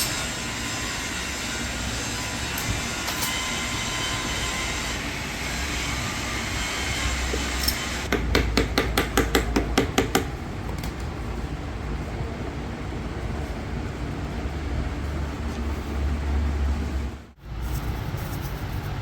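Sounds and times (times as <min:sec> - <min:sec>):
rapid sharp knocks: 0:08.1 - 0:10.4.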